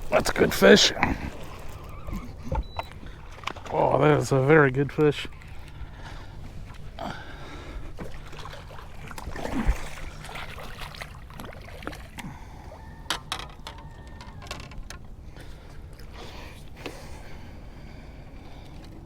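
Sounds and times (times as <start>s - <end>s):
water splashing: 0.0s - 12.6s
steady low rumble: 0.0s - 12.8s.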